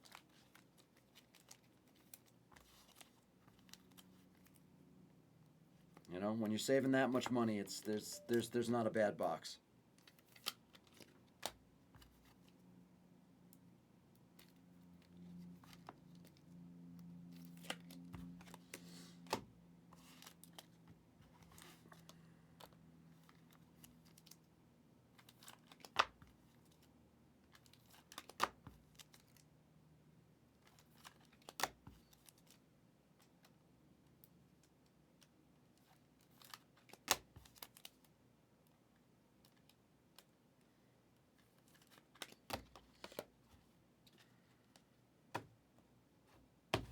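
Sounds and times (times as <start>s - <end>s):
cards and packaging rustling: 0.0s - 4.6s, 10.0s - 12.6s, 17.3s - 24.5s, 25.2s - 29.4s, 30.6s - 32.6s, 35.2s - 38.1s, 41.3s - 44.9s.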